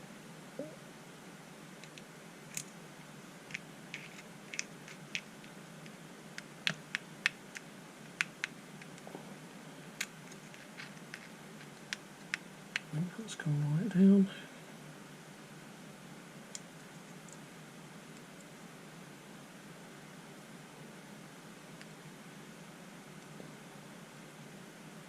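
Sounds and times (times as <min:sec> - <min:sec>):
small sharp clicks and taps: 0:03.5 - 0:09.0.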